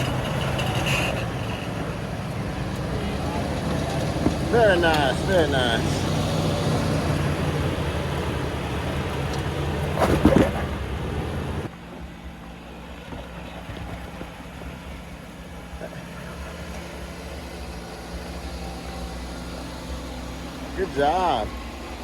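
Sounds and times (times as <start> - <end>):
engine running at low speed: 0.0 - 22.0.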